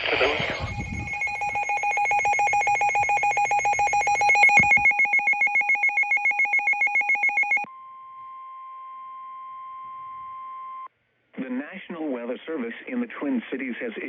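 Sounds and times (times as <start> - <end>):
rapid electronic beeping: 0.0 - 7.7
steady single-pitch alarm tone: 0.6 - 10.9.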